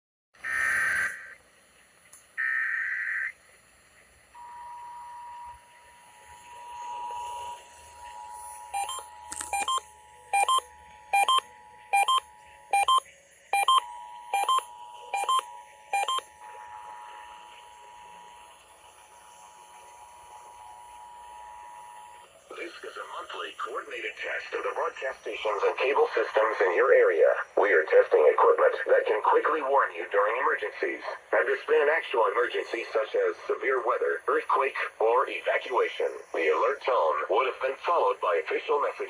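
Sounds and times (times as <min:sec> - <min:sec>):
dual-pitched attention tone: 0:08.8 - 0:09.8, 0:10.4 - 0:13.0, 0:13.6 - 0:16.2
sharp electronic beeps: 0:08.8 - 0:09.8, 0:10.4 - 0:13.0, 0:13.6 - 0:16.3
data tone bursts: 0:08.8 - 0:13.0, 0:13.6 - 0:16.3.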